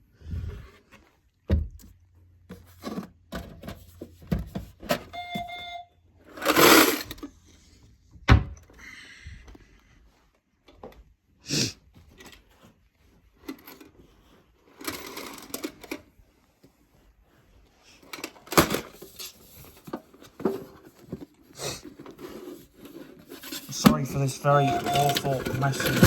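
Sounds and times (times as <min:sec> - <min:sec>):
money rustling: 0:21.1 - 0:26.0
cash register clicks and knocks: 0:23.8 - 0:26.0.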